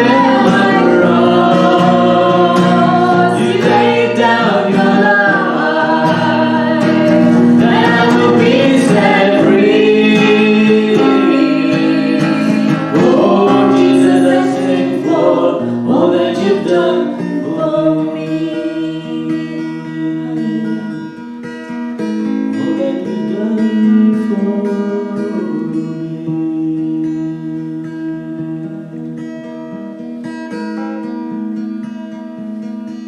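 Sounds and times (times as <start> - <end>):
person singing: 0.0 - 21.2, 22.6 - 27.6
guitar accompaniment: 0.0 - 33.0.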